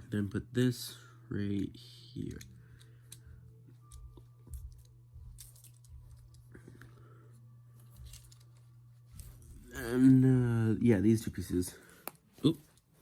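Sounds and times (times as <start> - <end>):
low steady hum: 0.0 - 13.0
plastic pieces clicking together: 4.5 - 6.4.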